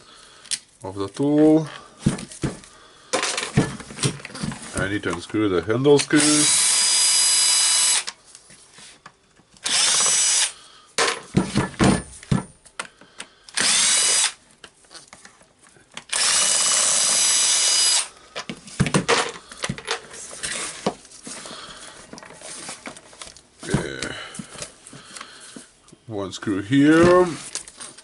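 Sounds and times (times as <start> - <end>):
power screwdriver whining: 6.0 - 8.2, 9.6 - 10.6, 13.5 - 14.4, 16.0 - 18.1.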